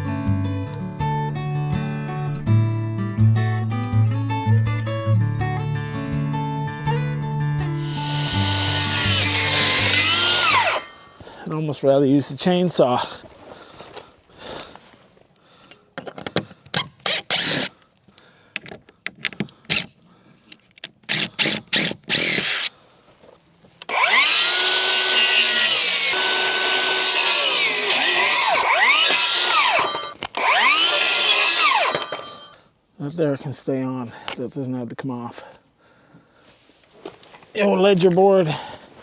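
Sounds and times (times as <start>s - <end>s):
electric saw cutting boards: 7.8s - 11.2s, 21.1s - 22.7s, 23.8s - 32.6s.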